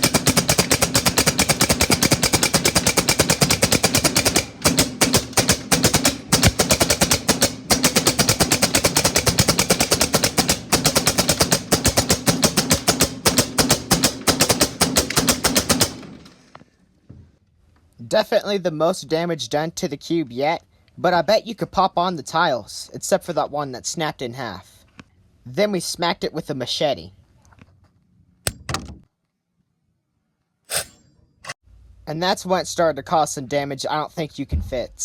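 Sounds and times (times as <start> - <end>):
staple gun firing: 0.0 - 8.1, 28.4 - 29.0.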